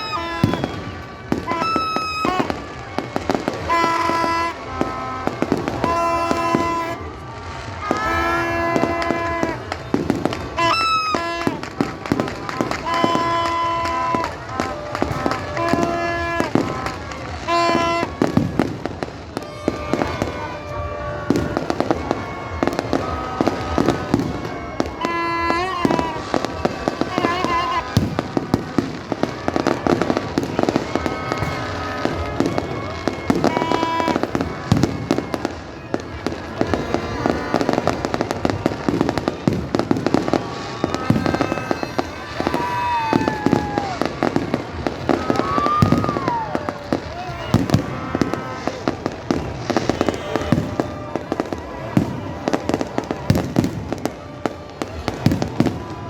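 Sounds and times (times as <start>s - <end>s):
fireworks bangs and crackles: 0.0s - 56.0s
voices: 0.0s - 56.0s.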